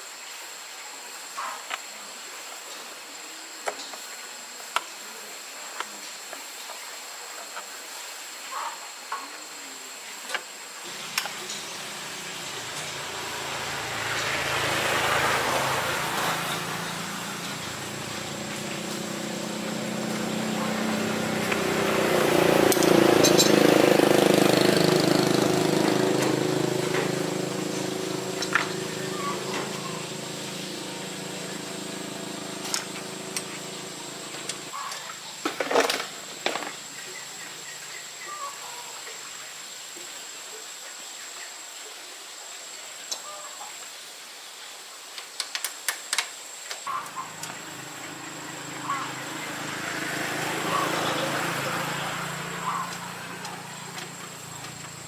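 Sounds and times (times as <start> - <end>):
motorbike engine running: 10.9 - 34.8, 46.9 - 55.0.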